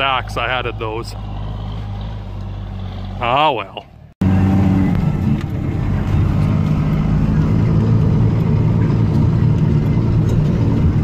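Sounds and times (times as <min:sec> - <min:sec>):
pickup truck engine running: 0:00.0 - 0:03.3, 0:03.9 - 0:11.0
tyre and road noise: 0:00.0 - 0:11.0.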